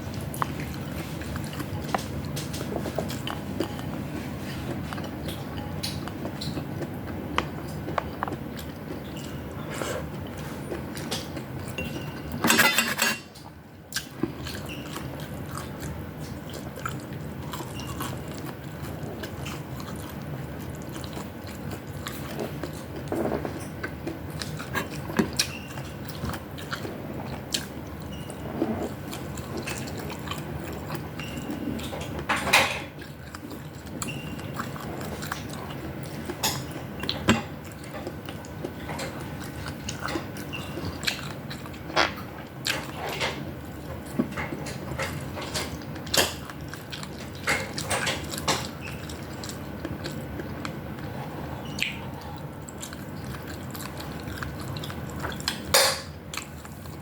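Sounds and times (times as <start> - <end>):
chewing: 0.1 - 12.4, 13.3 - 57.0
cutlery clatters: 11.8 - 13.3
cutlery scraping on plate: 11.8 - 13.3.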